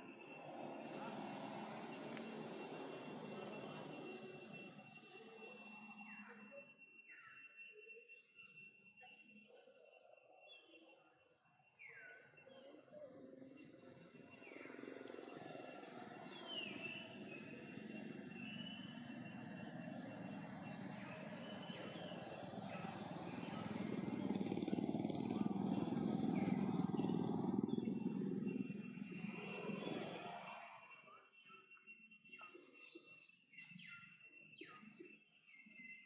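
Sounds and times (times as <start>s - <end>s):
passing motor vehicle engine: 0.0s - 4.9s, 14.7s - 31.0s
high insect drone: 0.0s - 31.2s.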